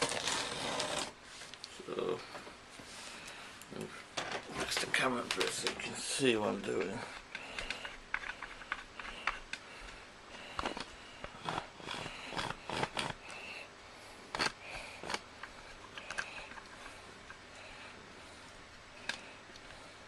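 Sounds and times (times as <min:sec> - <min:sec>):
cardboard parcel being opened: 0:00.0 - 0:01.2.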